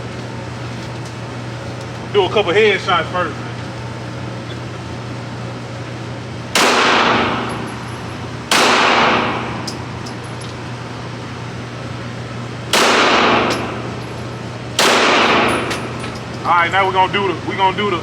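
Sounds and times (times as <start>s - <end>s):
pistol shots echoing: 6.6s - 7.8s, 8.5s - 9.7s, 12.7s - 14.0s, 14.8s - 16.0s.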